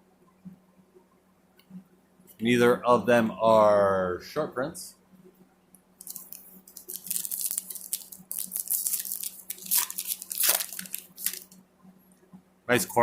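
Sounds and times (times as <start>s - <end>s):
cards and wrapper rustling: 6.0s - 11.6s.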